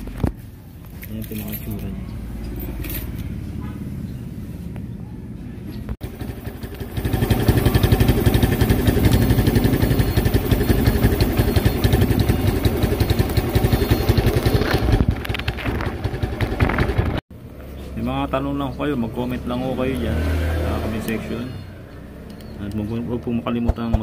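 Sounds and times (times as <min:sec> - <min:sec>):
scooter engine running: 0:05.2 - 0:17.2.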